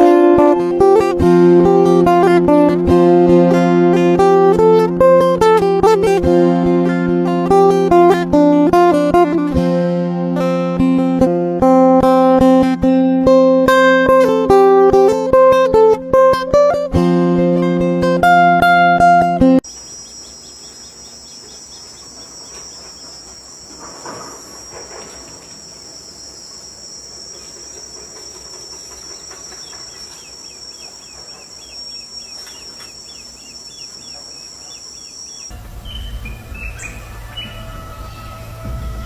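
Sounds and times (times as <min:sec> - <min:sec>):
insects droning: 0:19.6 - 0:39.0
quick repeated chirps: 0:25.8 - 0:36.9
low hum: 0:27.2 - 0:39.0.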